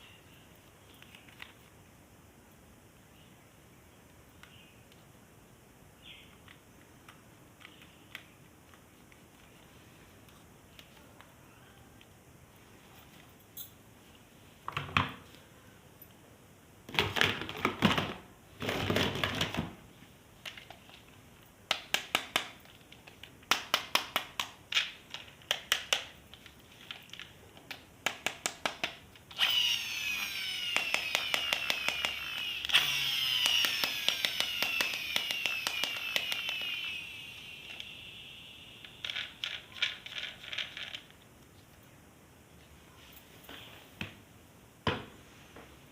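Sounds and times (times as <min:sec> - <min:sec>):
toy gun electronic zaps: 0:29.3 - 0:39.4.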